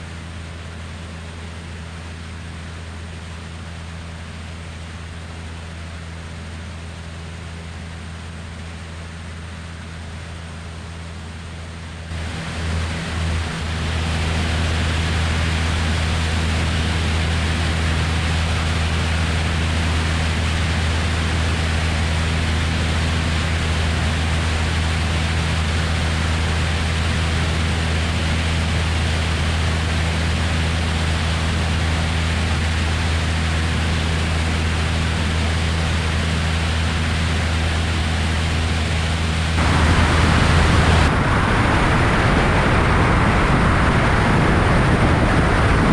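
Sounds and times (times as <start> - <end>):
propeller plane engine droning: 0.0 - 45.9
wind rushing over microphone: 12.1 - 45.9.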